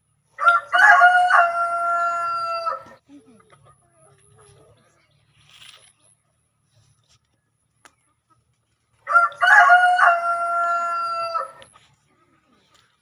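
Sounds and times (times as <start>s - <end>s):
rooster crowing: 0.4s - 3.0s, 9.0s - 11.7s.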